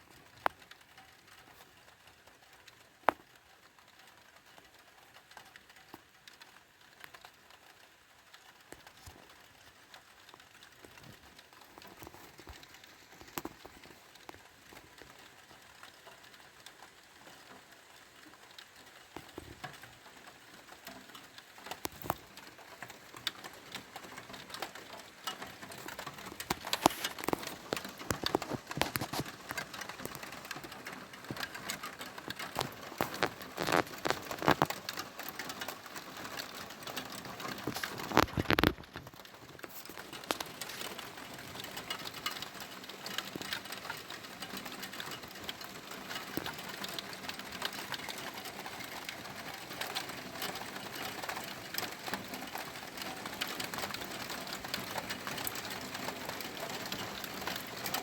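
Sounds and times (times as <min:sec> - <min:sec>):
raindrops pattering: 0:00.0 - 0:58.0.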